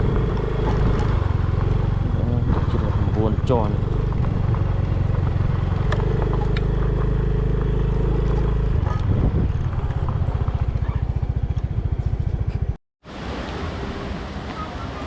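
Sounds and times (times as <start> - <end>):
engine running with low pulsing: 0.0 - 12.8.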